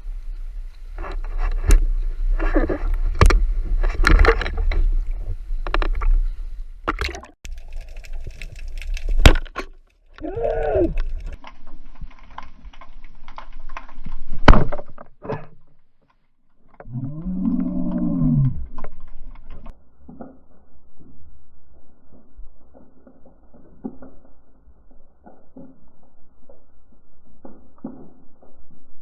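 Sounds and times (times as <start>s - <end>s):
water rumbling and swishing: 0.0s - 15.8s, 16.6s - 29.0s
short groan rising and falling: 16.8s - 18.8s.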